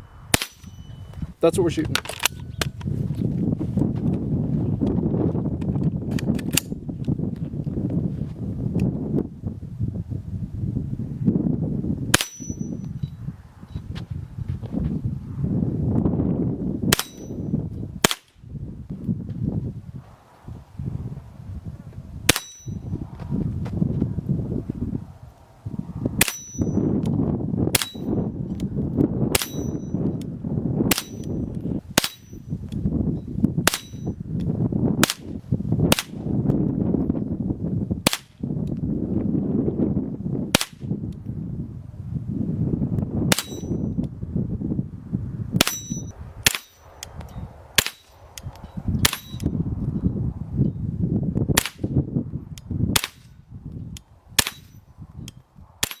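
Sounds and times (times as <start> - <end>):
bullets ringing on steel: 0.4 - 1.0, 12.2 - 13.0, 17.0 - 17.5, 22.3 - 22.8, 26.2 - 26.8, 29.4 - 30.0, 30.9 - 31.4, 43.4 - 43.8, 45.6 - 46.8.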